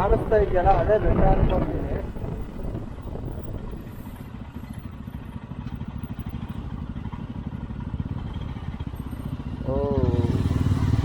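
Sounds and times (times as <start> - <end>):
motorcycle engine cruising: 0.0 - 11.0.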